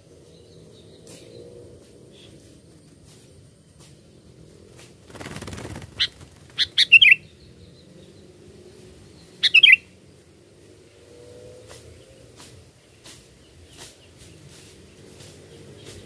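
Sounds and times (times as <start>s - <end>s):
bulbul calling: 5.9s - 7.5s, 9.3s - 9.9s
rustling noise: 12.4s - 16.0s.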